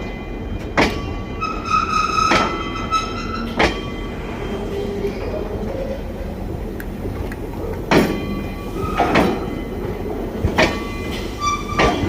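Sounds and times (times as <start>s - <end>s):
train rumble: 0.0s - 12.0s
high wheel squeal: 10.9s - 12.0s.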